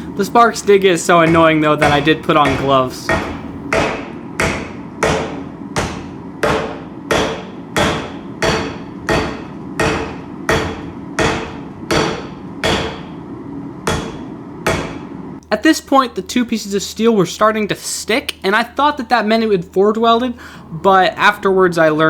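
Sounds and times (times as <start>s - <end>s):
hammer striking steel on anvil: 1.2s - 13.2s, 13.9s - 15.1s.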